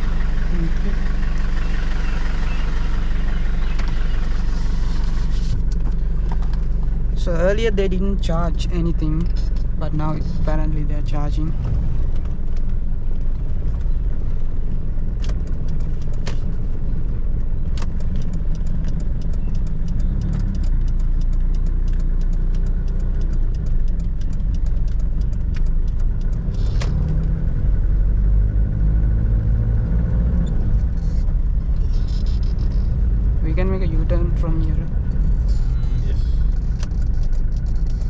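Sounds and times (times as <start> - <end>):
diesel engine and road rumble: 0.0 - 38.0
sharp clicks: 11.4 - 27.5, 36.3 - 38.0.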